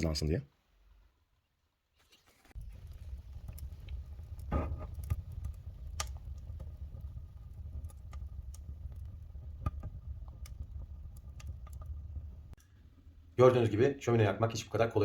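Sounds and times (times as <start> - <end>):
wood fire crackling: 1.9 - 15.0
sharp pops of fire: 2.5 - 12.6
low fire rumble: 2.5 - 15.0.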